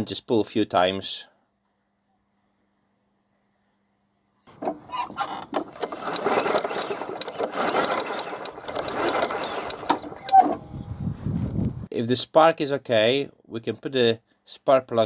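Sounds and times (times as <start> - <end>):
engine whirring with clicks: 4.5 - 11.8
recoil starter cord pulled: 4.5 - 11.8.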